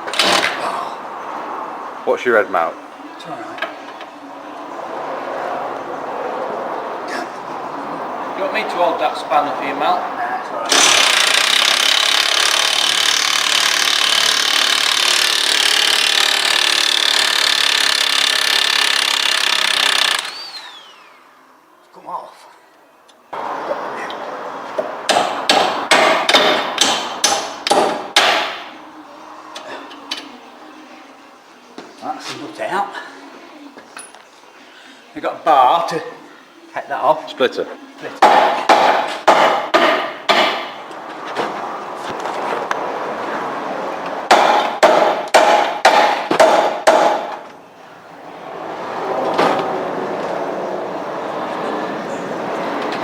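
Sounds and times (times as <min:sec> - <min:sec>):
hammer striking metal: 0:25.1 - 0:28.7, 0:38.2 - 0:40.8, 0:44.3 - 0:47.4.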